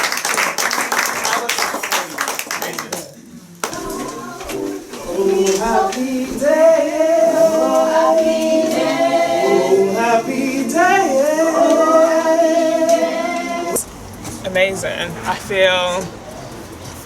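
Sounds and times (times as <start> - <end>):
group singing without accompaniment: 3.6 - 13.9.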